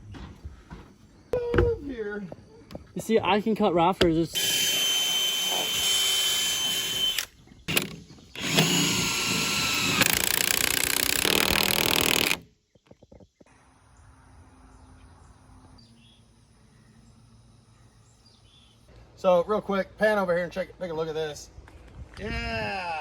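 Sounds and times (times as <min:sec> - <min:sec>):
handheld power tool running: 0:04.4 - 0:12.4.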